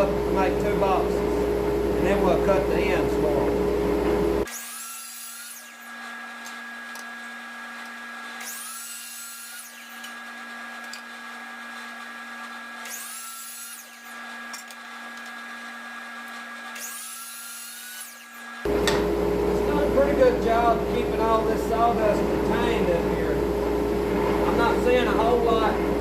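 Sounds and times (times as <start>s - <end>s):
steady hum: 0.0s - 4.5s, 18.7s - 26.0s
power saw cutting wood: 4.4s - 23.4s.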